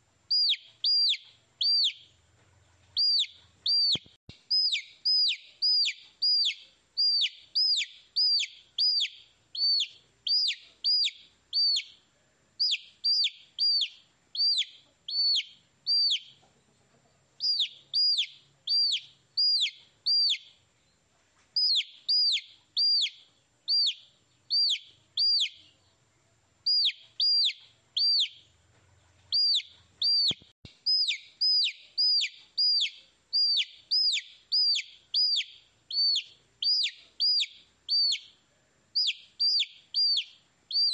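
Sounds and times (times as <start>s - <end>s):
baby chicks peeping: 0.2s - 20.7s, 21.4s - 38.4s, 39.0s - 40.9s.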